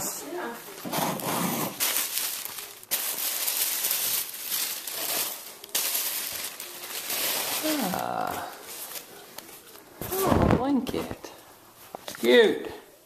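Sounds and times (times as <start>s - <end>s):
package wrapping crinkling and tearing: 0.7s - 10.5s.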